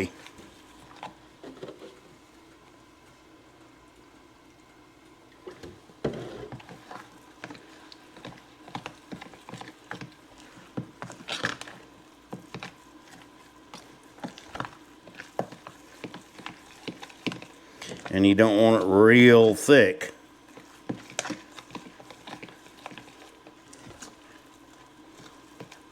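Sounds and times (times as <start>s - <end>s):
fork stirring batter in bowl: 6.0s - 19.4s, 20.4s - 25.9s.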